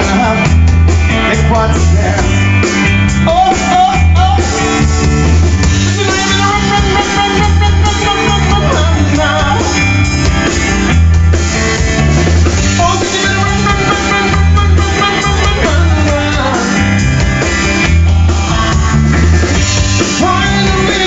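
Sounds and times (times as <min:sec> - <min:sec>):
bass and drum kit: 0:00.0 - 0:21.0
electric guitar: 0:00.0 - 0:21.0.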